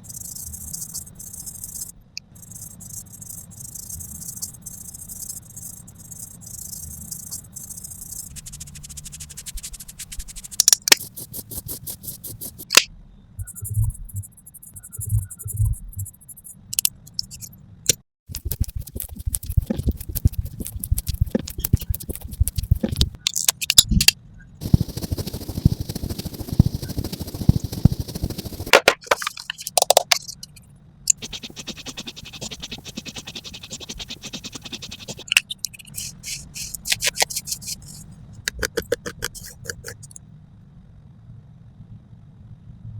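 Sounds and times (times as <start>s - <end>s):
soft hissing and ticking: 0.0s - 12.8s, 18.3s - 23.2s, 24.6s - 40.2s
rough scraping: 2.5s - 12.8s, 18.3s - 23.2s, 24.6s - 40.2s
crisp tapping and clicking: 4.3s - 12.8s, 18.3s - 23.2s, 24.6s - 40.2s.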